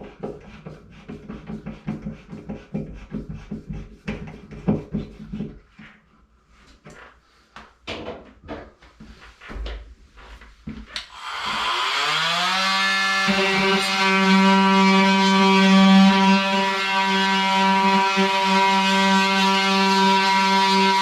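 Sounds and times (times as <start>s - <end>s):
electric drill motor whining: 11.1s - 15.0s.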